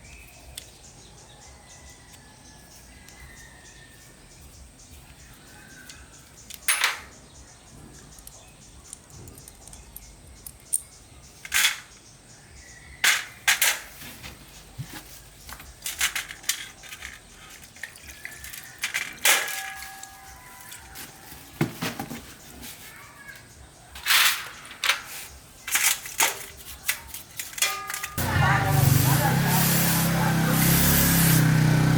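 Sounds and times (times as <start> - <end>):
metal engine parts clinking: 5.9 - 7.3, 15.2 - 21.2, 23.9 - 28.5
hand tools knocking and clinking: 6.5 - 7.2, 15.6 - 20.9, 25.7 - 28.3.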